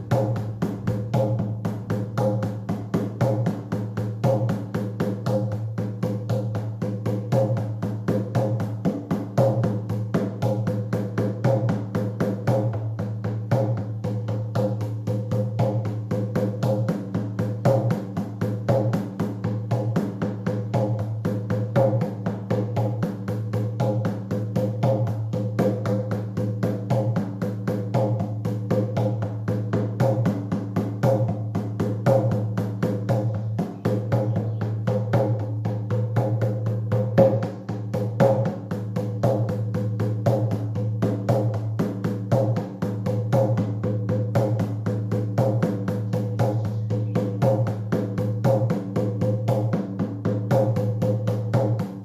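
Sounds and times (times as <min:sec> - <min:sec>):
drum beaten in fast rhythm: 0:00.0 - 0:52.0.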